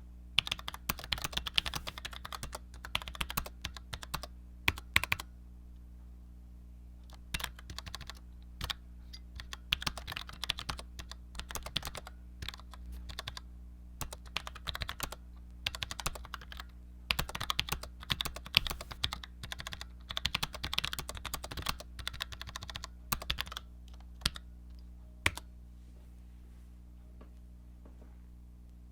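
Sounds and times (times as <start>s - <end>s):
keyboard keystroke clicks: 0.4s - 5.2s, 25.2s - 25.5s.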